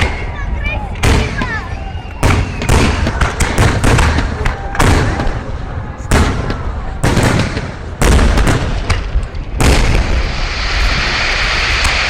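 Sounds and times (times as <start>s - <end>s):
fireworks booming: 0.0s - 12.0s
fireworks fizzing hiss: 7.4s - 12.0s.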